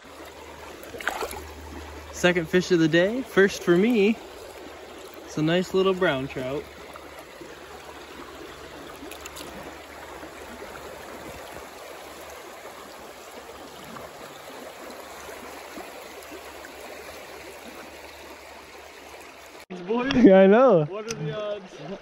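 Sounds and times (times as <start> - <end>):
river water rushing: 0.0 - 19.6.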